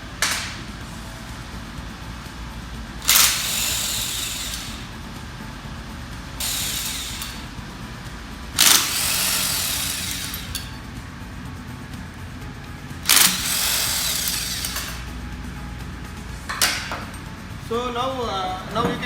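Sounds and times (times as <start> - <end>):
hand-held power tool bursts: 3.0 - 4.9, 6.4 - 7.5, 8.6 - 10.7, 13.0 - 15.1.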